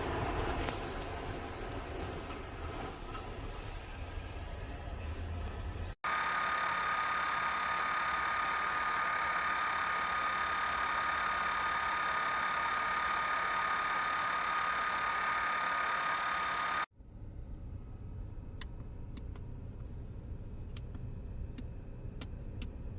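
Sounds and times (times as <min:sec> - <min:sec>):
cooling fan whirring: 0:06.1 - 0:16.9.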